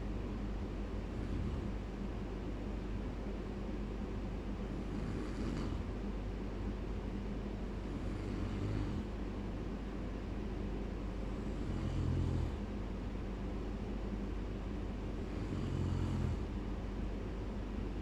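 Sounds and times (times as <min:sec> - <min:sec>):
steady low hum: 0:00.0 - 0:18.0
person snoring: 0:01.1 - 0:01.8, 0:04.8 - 0:05.9, 0:07.9 - 0:09.1, 0:11.4 - 0:12.6, 0:15.2 - 0:16.5.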